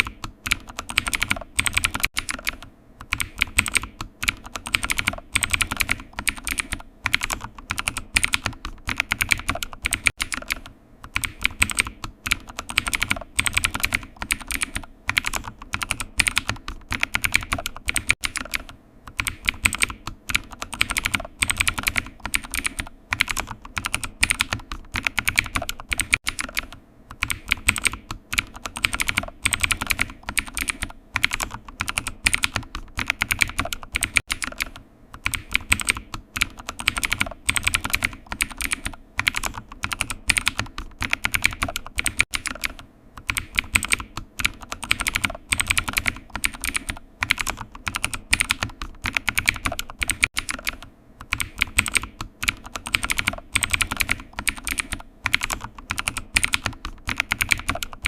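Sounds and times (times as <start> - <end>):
computer keyboard typing: 0.0 - 58.0.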